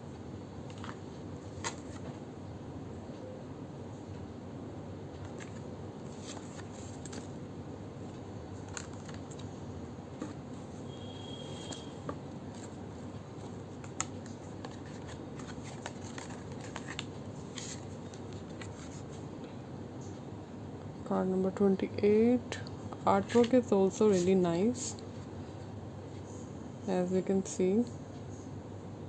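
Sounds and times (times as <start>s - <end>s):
cards clicking and sliding: 1.6s - 2.1s, 5.2s - 7.3s, 13.4s - 19.2s.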